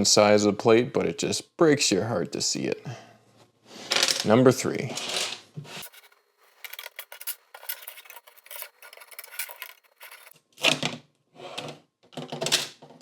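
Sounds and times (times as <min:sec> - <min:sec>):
plastic bricks clicking and scraping: 0:05.8 - 0:10.4.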